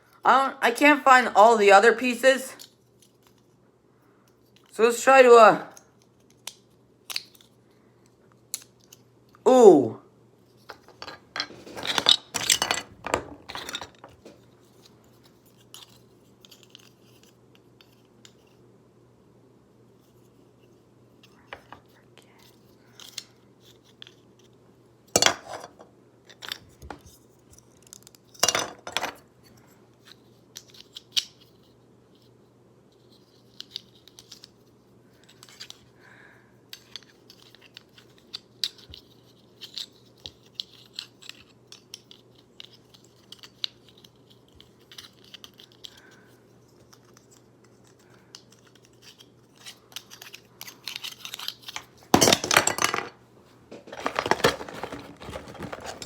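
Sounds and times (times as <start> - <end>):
plastic pieces clicking and rattling: 6.0 - 7.6, 10.7 - 18.4, 26.3 - 29.2, 36.7 - 46.0, 46.8 - 53.1, 53.7 - 56.0.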